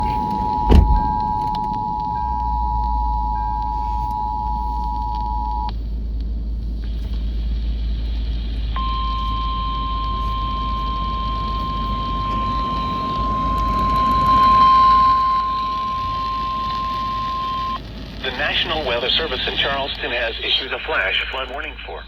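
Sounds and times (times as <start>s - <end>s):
low rumble: 0.0s - 22.0s
steady warning tone: 0.0s - 22.0s
two-tone alert signal: 8.8s - 17.8s.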